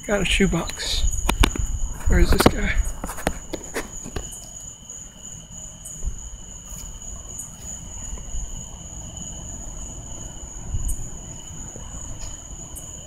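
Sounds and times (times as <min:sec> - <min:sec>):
night insects buzzing: 0:00.0 - 0:13.0
low rumble of movement: 0:00.4 - 0:04.2.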